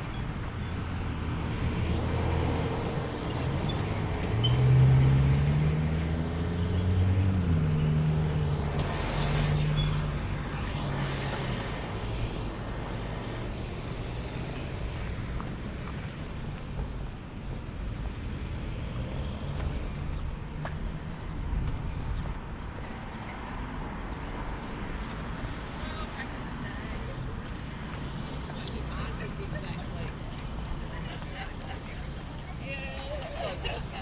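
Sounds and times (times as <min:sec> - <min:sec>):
vehicle engine passing by: 0:04.3 - 0:12.4.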